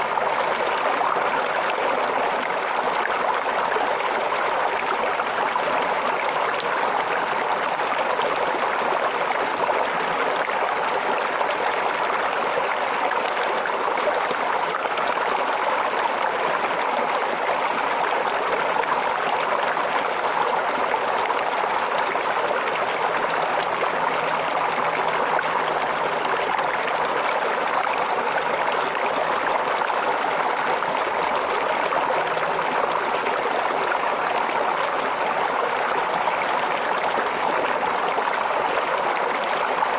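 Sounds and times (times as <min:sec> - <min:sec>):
stream babbling over stones: 0:00.0 - 0:39.9.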